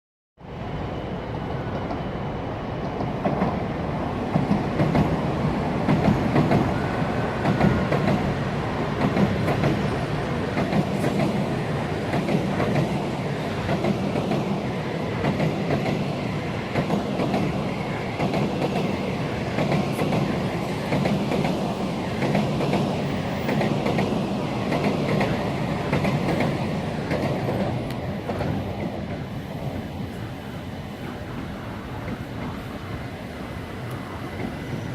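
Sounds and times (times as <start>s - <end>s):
train rumble: 0.5s - 34.9s
train wheels clacking on rail joints: 7.4s - 14.6s, 15.2s - 29.2s.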